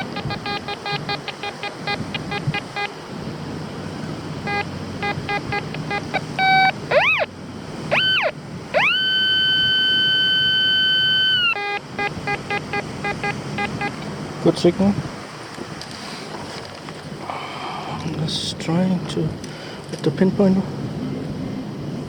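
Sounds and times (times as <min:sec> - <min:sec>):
metal detector beeps: 0:00.0 - 0:02.9, 0:04.5 - 0:07.3, 0:07.9 - 0:14.0
metal detector sweeping tones: 0:00.0 - 0:02.9, 0:04.4 - 0:07.3, 0:07.9 - 0:14.0
long steady detector tone: 0:00.0 - 0:03.2, 0:03.9 - 0:14.0.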